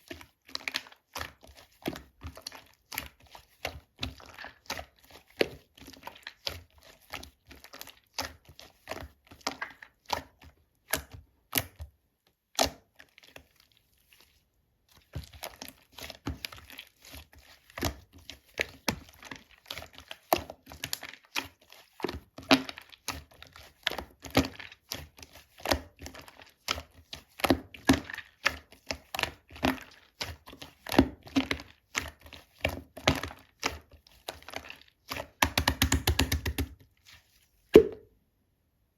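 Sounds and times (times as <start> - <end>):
hands squeezing slime: 0.0 - 38.1.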